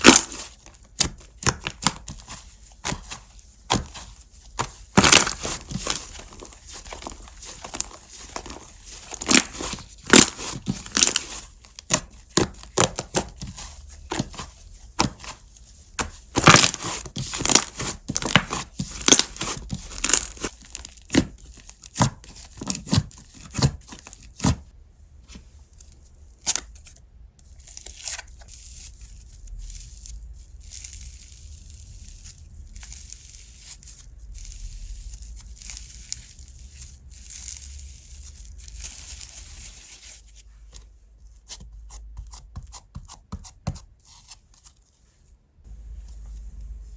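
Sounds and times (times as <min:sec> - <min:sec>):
slime crackling and popping: 0:00.0 - 0:24.5.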